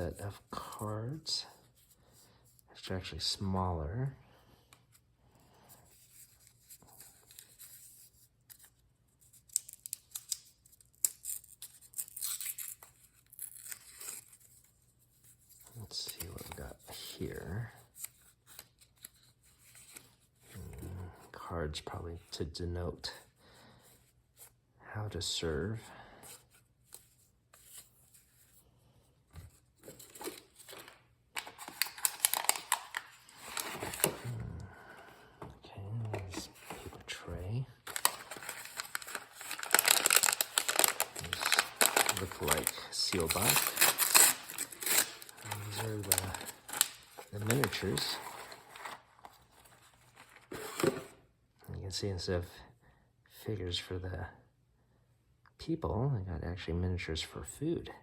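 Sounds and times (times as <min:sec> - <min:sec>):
card wrapping being torn: 0:09.3 - 0:14.6, 0:29.8 - 0:34.4, 0:36.0 - 0:51.1
packaging crinkling: 0:29.8 - 0:34.3, 0:37.8 - 0:51.1.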